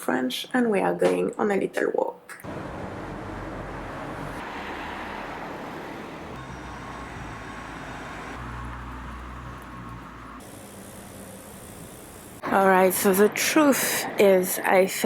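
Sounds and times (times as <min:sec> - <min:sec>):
road traffic noise: 0:02.4 - 0:15.0
passing vehicle engine rumble: 0:02.5 - 0:10.8.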